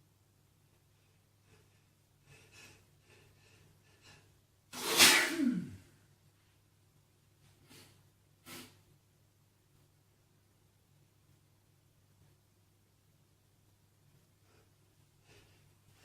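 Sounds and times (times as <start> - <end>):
man sneezing: 4.8 - 5.9.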